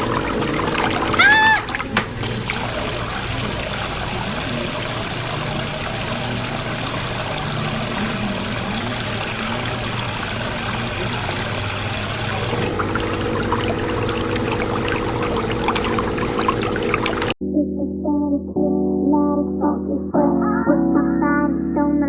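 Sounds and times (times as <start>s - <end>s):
running water rushing: 0.0s - 17.4s.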